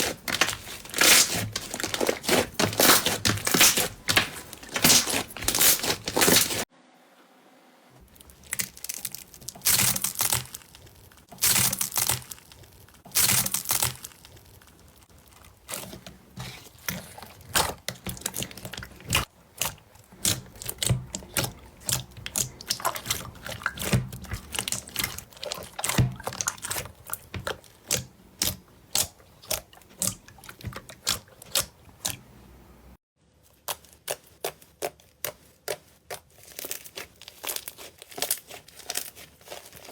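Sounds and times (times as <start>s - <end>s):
slime squeezed by hand crackling: 0.0s - 6.6s, 8.1s - 16.6s.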